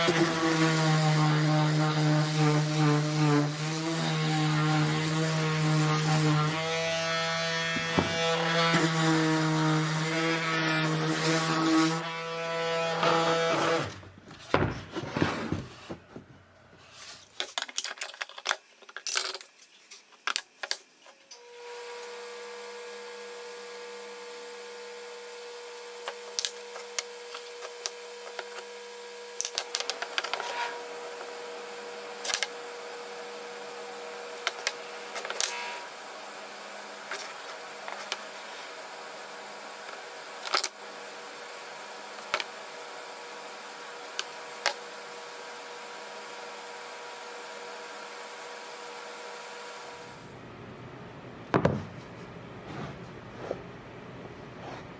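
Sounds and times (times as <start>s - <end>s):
wood and tools knocking: 7.7s - 8.3s, 13.8s - 16.4s, 51.5s - 53.6s
steady machine hum: 50.0s - 54.9s.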